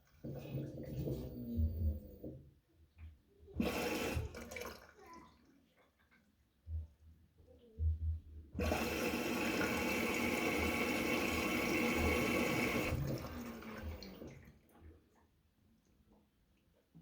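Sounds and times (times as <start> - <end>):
water rushing into washing machine: 0.0 - 2.4, 3.5 - 5.3, 8.6 - 14.8.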